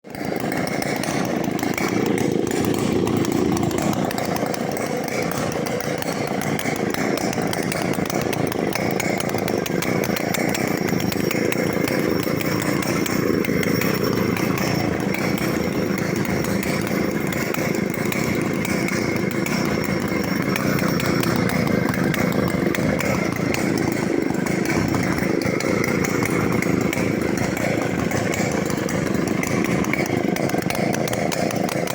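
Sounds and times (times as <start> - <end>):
chainsaw engine running: 0.0 - 31.9.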